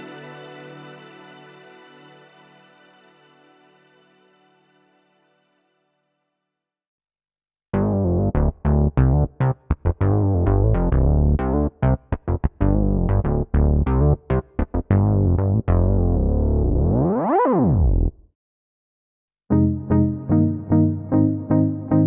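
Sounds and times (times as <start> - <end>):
heavy bass: 7.8 - 17.1
swooping synth sound: 16.6 - 18.2.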